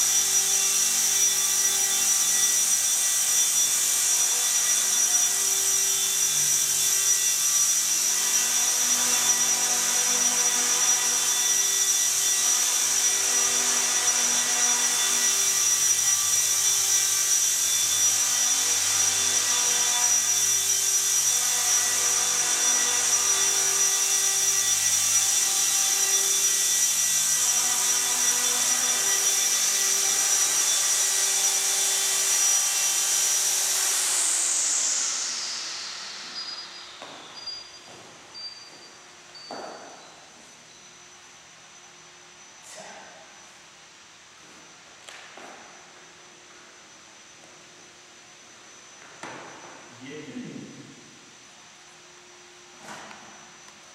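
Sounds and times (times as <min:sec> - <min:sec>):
rc helicopter motor whine: 0:00.0 - 0:43.2.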